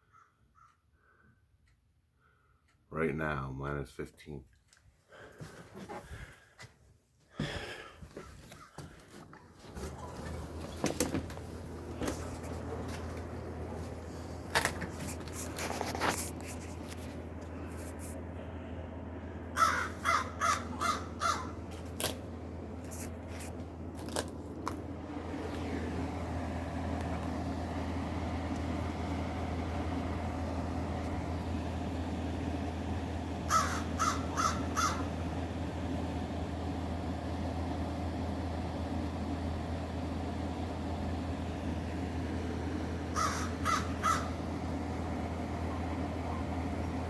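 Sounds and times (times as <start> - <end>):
air conditioner humming: 1.0 - 47.0
bird harsh calls: 19.6 - 21.6, 33.5 - 35.1, 43.2 - 44.4.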